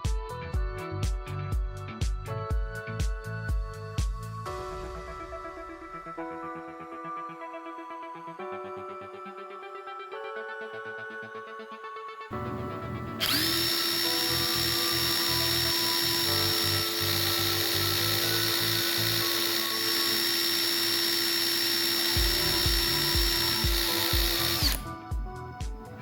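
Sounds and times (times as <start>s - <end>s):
background music with beat: 0.0s - 14.0s, 21.6s - 26.0s
power tool motor whining: 12.4s - 25.0s.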